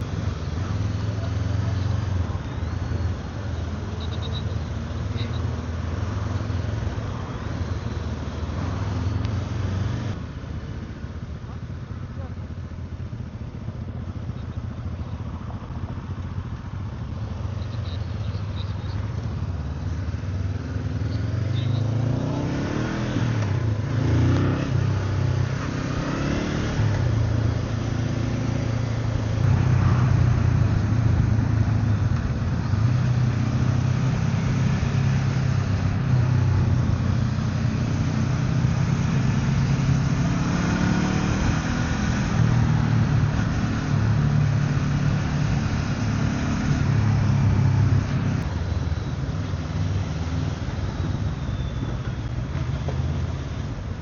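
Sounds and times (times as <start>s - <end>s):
road noise: 0.0s - 54.0s
motorcycle engine accelerating: 12.2s - 54.0s.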